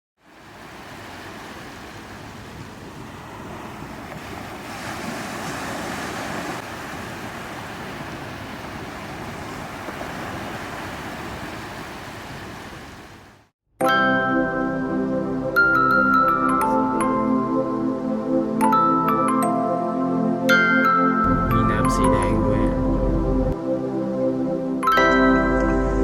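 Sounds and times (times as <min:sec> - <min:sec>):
sea surf washing onto beach: 0:00.2 - 0:13.4.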